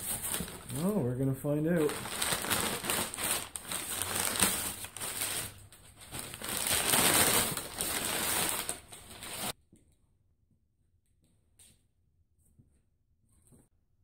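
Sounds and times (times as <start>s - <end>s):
cardboard box crinkling and rustling: 0.0s - 0.9s, 1.8s - 9.5s.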